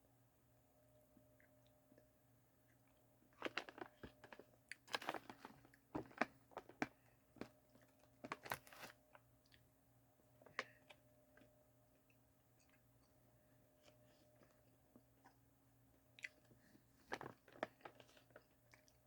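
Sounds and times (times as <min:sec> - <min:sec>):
snack bag crinkling and crunching: 0:03.3 - 0:09.0, 0:16.2 - 0:19.0.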